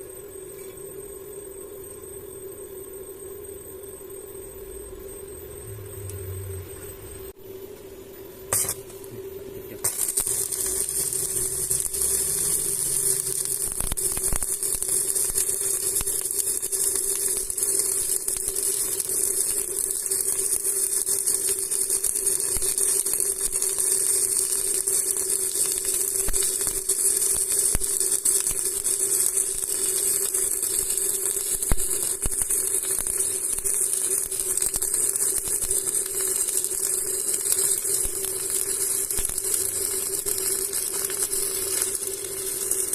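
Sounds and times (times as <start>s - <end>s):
steady hum: 0.0s - 20.7s
welding arc crackling: 8.5s - 42.9s.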